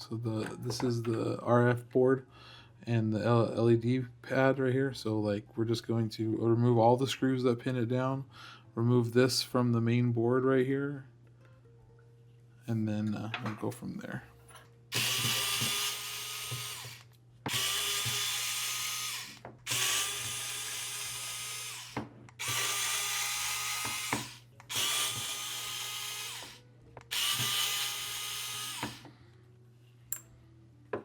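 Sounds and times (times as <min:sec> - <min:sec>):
electric screwdriver whine: 0:14.9 - 0:29.1.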